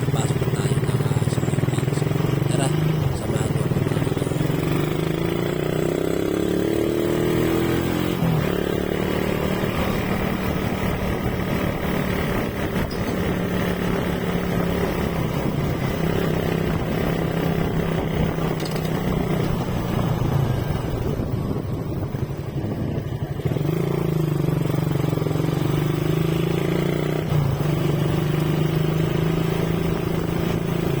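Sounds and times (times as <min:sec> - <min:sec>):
motorcycle engine pulling away: 0:00.0 - 0:31.0
wind on microphone: 0:09.8 - 0:23.6.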